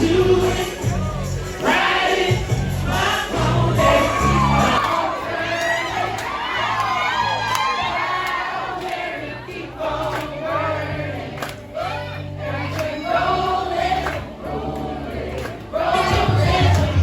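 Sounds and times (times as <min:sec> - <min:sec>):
backing track with bass line: 0:00.0 - 0:04.9, 0:10.6 - 0:17.0
people singing karaoke: 0:00.0 - 0:17.0.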